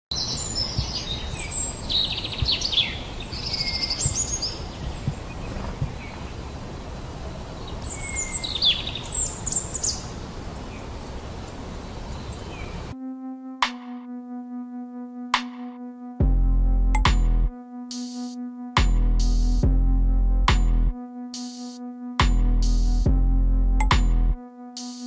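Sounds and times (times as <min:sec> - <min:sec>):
small birds chirping: 0:00.1 - 0:13.0.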